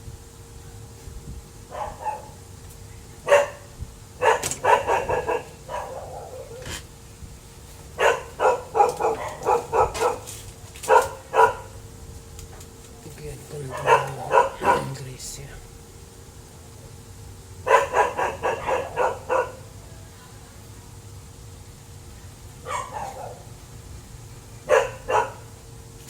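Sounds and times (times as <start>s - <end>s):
dog barking: 1.7s - 2.4s, 3.2s - 6.8s, 8.0s - 11.8s, 13.6s - 15.0s, 17.6s - 19.8s, 22.6s - 23.5s, 24.6s - 25.6s.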